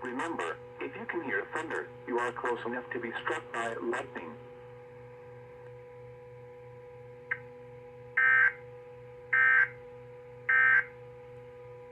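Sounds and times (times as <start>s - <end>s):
faint steady hum: 0.0s - 11.9s.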